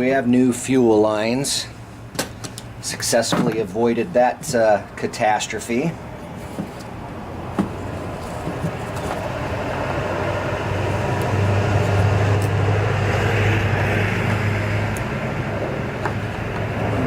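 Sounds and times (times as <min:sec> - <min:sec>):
vehicle passing: 0:05.9 - 0:17.0.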